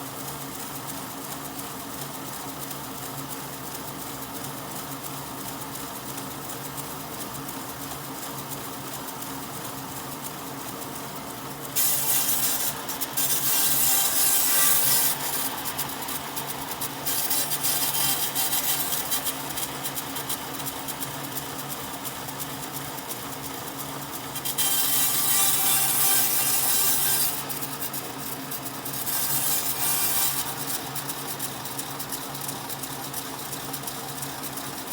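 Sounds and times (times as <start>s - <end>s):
power tool motor hum: 11.8s - 19.7s, 24.4s - 28.1s, 28.9s - 31.4s.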